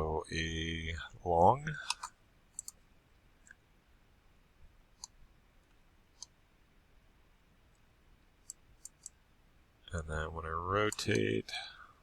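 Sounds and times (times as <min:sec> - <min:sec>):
faint computer mouse clicks: 0:01.9 - 0:02.8, 0:06.2 - 0:06.4, 0:08.4 - 0:09.2.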